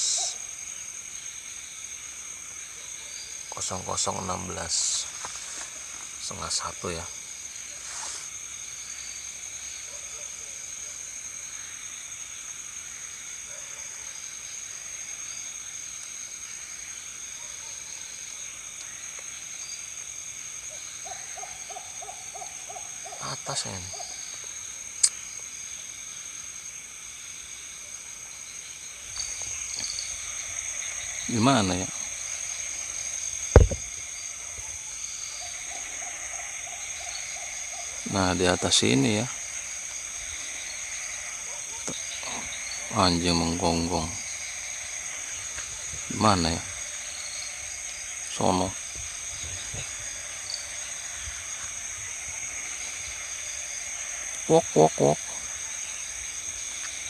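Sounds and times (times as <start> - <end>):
insects chorus: 0.0 - 57.0
sharp double knock: 33.5 - 33.8.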